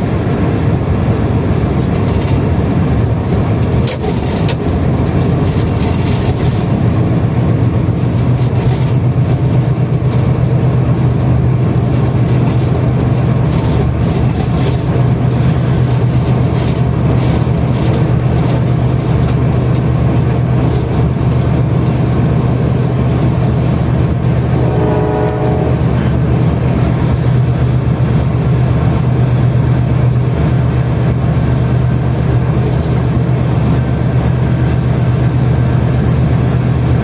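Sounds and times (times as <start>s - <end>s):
train rumbling past: 0.0s - 37.0s
train horn blast: 24.4s - 26.2s.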